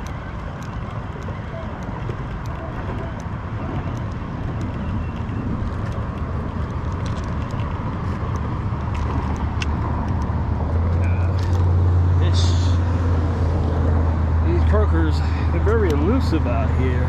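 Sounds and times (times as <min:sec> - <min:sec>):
faint clicks: 0:00.0 - 0:10.3
steady low rumble: 0:00.0 - 0:17.0.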